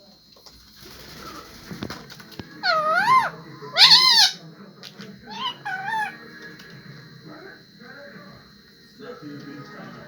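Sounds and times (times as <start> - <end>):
parrot high-pitched calls: 2.6 - 4.4, 5.3 - 6.2.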